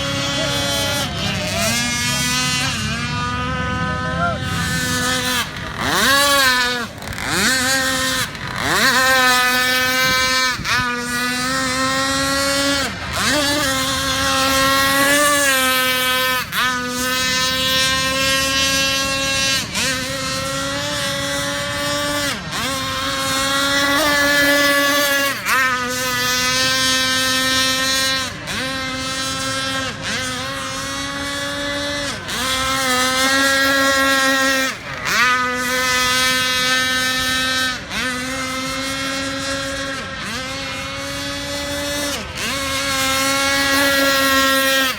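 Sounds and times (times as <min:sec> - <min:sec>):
model boat motor whining: 0:00.0 - 0:44.9.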